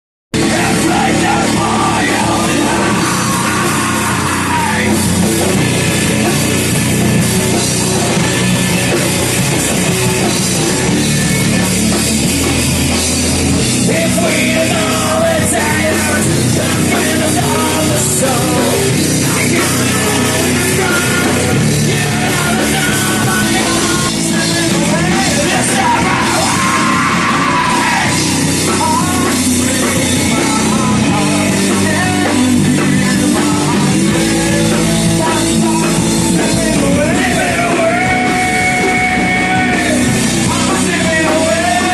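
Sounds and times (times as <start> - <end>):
bass: 0.3 - 41.9
distorted electric guitars: 0.3 - 41.9
shouted vocals: 0.4 - 5.0, 13.9 - 41.9
drum kit: 0.4 - 41.9.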